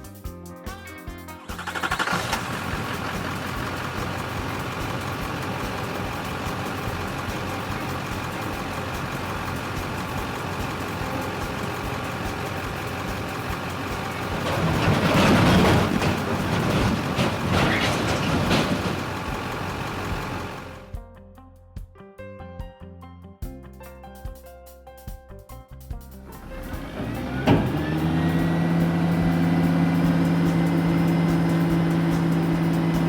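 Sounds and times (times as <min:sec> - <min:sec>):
vehicle engine running: 0:01.4 - 0:21.0, 0:26.2 - 0:33.0.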